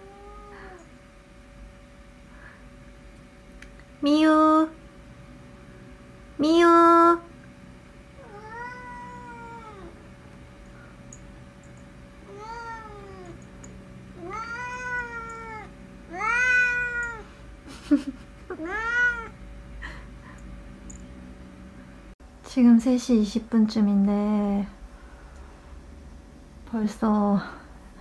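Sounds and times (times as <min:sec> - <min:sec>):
cat meowing: 0:00.0 - 0:00.8, 0:08.2 - 0:09.9, 0:12.3 - 0:13.4, 0:14.2 - 0:17.3, 0:18.6 - 0:19.4.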